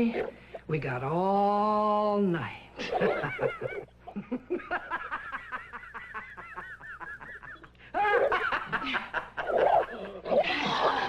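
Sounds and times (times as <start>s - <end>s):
high-pitched cackling laughter: 2.8s - 11.0s.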